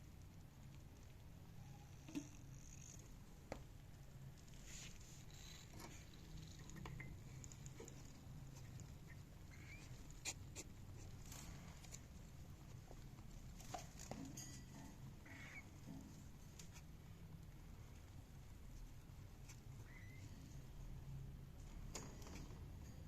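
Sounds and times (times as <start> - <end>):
soft bird chirps: 9.0 - 10.0, 19.8 - 20.4.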